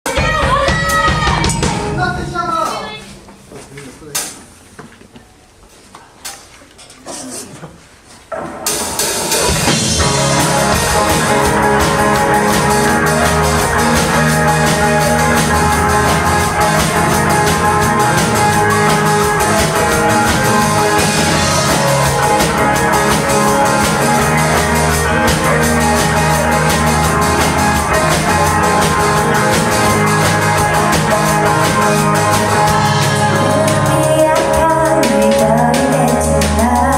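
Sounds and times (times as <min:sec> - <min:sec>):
drum kit beat: 0:00.0 - 0:03.5, 0:08.3 - 0:36.9
electric guitars: 0:08.7 - 0:36.9.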